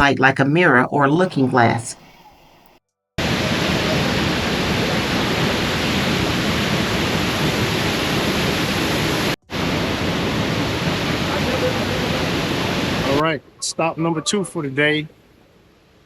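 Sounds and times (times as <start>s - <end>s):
waterfall rushing: 3.2s - 13.2s.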